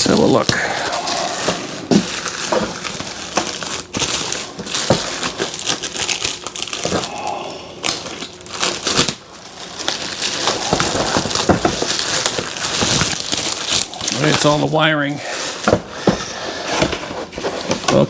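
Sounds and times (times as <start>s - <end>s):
packaging crinkling and rustling: 0.0s - 18.0s.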